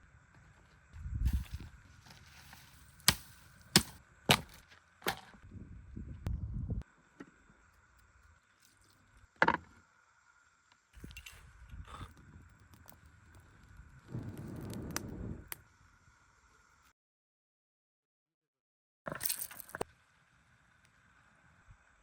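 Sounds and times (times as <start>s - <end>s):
rustling and handling noise: 0.8s - 3.7s.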